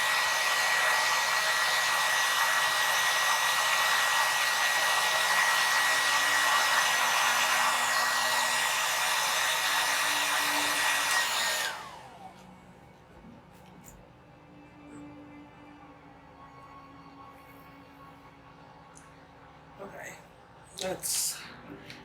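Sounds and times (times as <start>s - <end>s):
hair dryer blowing with whine: 0.0s - 13.0s.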